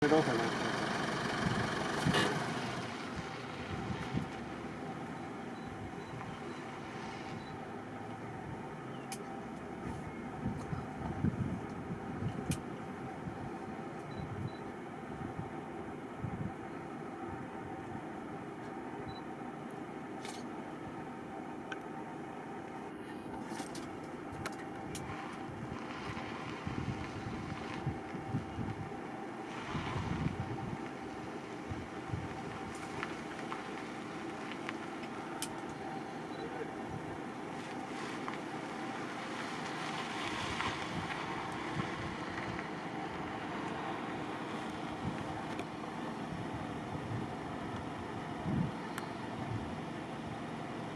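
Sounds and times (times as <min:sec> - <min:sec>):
vehicle engine idling: 0:00.0 - 0:50.9
wind rumble on microphone: 0:01.4 - 0:02.5, 0:03.1 - 0:07.6, 0:09.7 - 0:15.6, 0:16.2 - 0:18.0, 0:24.8 - 0:34.5, 0:39.4 - 0:45.7, 0:46.3 - 0:49.8.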